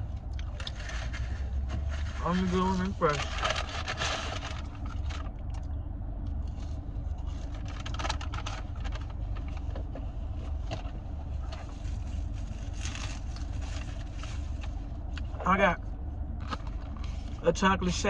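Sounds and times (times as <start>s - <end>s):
car engine idling: 0.0s - 18.0s
paper bag rustling: 0.5s - 5.4s, 11.3s - 14.9s.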